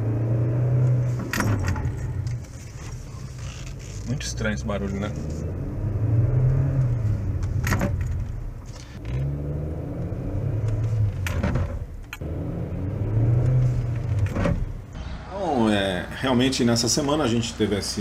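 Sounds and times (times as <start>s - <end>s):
pickup engine revving: 4.4s - 15.0s.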